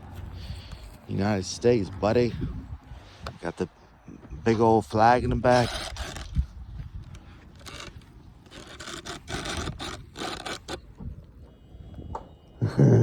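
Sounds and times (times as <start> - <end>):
scraping and rubbing: 5.2 - 6.5, 7.5 - 11.0.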